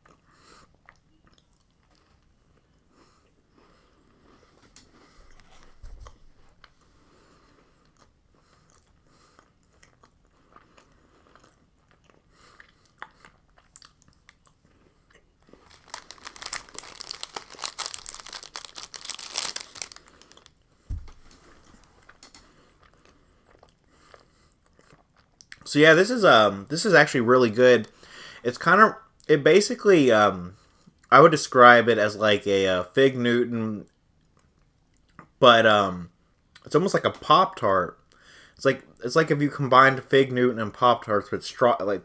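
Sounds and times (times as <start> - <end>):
person chewing cookie bar: 0.0 - 25.7, 33.9 - 35.4
loud crackling: 15.7 - 20.5
soft low thumps: 20.9 - 21.4.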